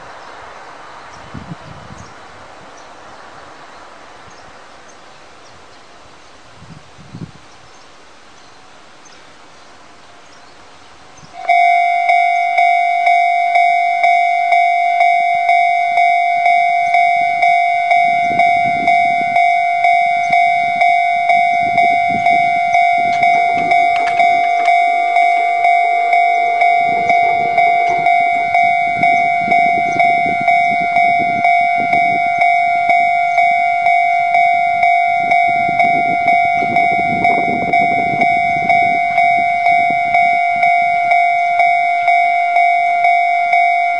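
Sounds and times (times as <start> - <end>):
low rumble: 11.0 - 43.9
level crossing warning bell: 11.3 - 43.9.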